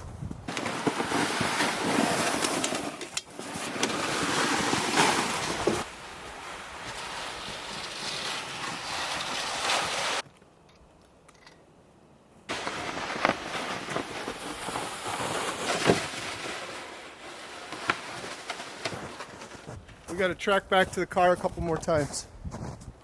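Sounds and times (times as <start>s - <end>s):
wind on microphone: 0.0s - 0.5s, 21.6s - 23.0s
footsteps crunching in snow: 3.3s - 10.2s, 12.5s - 23.0s.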